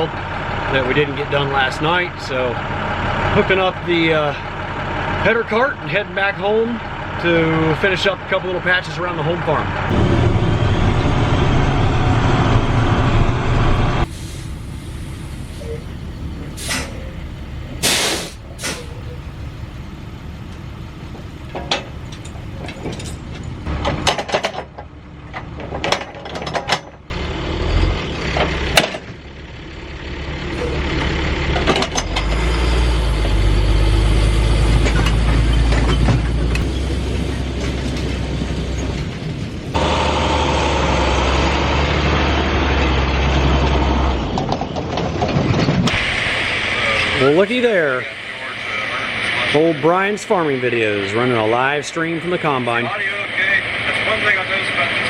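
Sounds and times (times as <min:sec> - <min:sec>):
diesel engine running: 0:00.0 - 0:55.0
metallic knocks and clanks: 0:21.4 - 0:27.1, 0:31.6 - 0:32.4.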